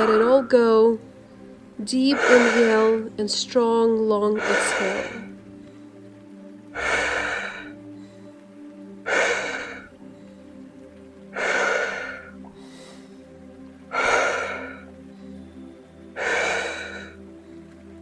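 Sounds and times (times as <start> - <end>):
woman breathing forcefully: 0.0 - 0.4, 2.1 - 3.0, 4.4 - 15.4, 16.2 - 17.9
soft background music: 0.0 - 18.0.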